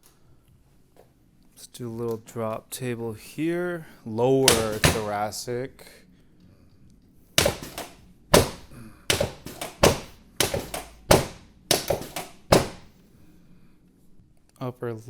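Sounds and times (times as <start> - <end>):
table section clunking down: 4.5 - 5.2, 7.4 - 12.9.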